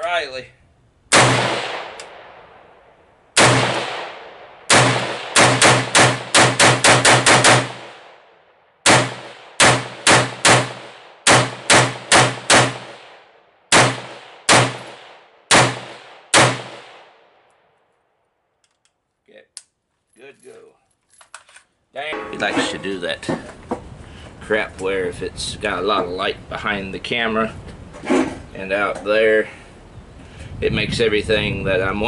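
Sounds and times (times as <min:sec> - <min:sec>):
semi-automatic rifle shots: 0:01.1 - 0:17.5.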